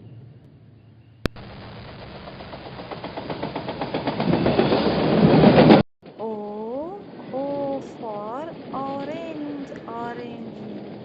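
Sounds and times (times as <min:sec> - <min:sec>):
train wheels clattering over rail joints: 0:02.5 - 0:05.8.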